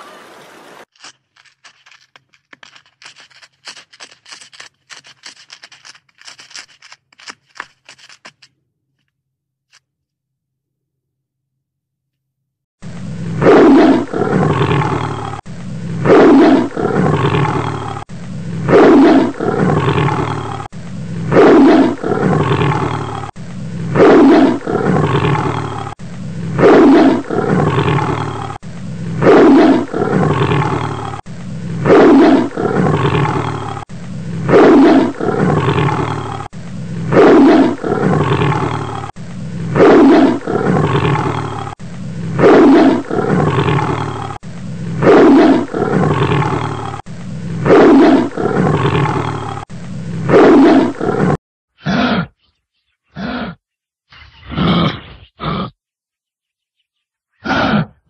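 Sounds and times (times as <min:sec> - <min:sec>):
large animal roaring: 0:13.0 - 0:52.3, 0:53.2 - 0:53.6, 0:54.4 - 0:55.8, 0:57.4 - 0:58.0.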